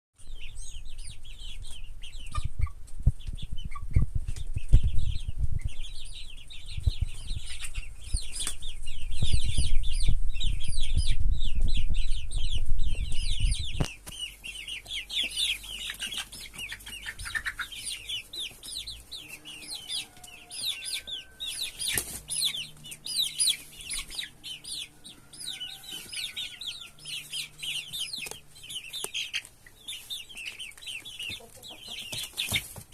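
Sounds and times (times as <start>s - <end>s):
chickens clucking: 0.2s - 32.9s.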